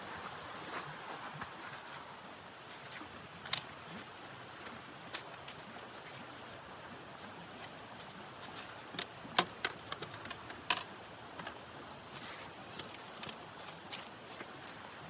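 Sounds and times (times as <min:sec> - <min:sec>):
faint steady hiss: 0:00.0 - 0:15.0
sharp clicks and knocks: 0:08.8 - 0:11.6.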